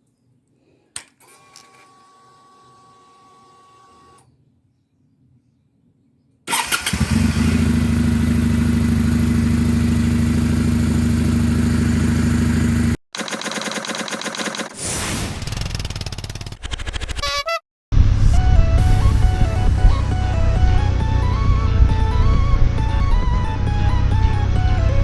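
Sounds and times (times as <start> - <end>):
click: 1.0 - 1.8
motorcycle engine idling: 6.5 - 13.0.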